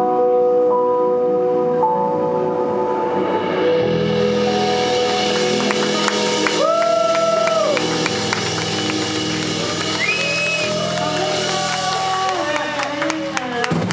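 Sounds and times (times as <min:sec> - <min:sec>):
electronic pop music: 0:03.0 - 0:13.9
audience shouting: 0:05.7 - 0:13.0.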